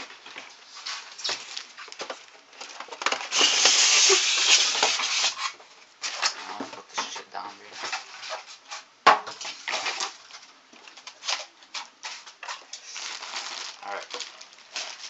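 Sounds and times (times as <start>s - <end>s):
packaging crackling and rustling: 9.5s - 15.0s.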